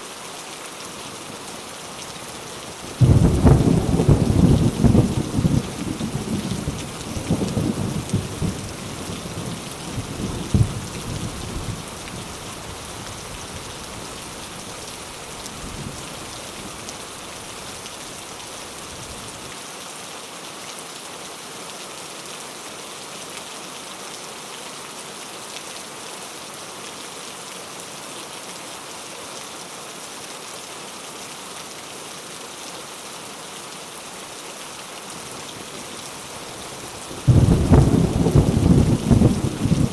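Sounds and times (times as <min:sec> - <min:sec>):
heavy rain: 0:00.0 - 0:39.9
thunder rumble: 0:03.0 - 0:11.9, 0:37.0 - 0:39.9
thunder clap: 0:37.2 - 0:39.9.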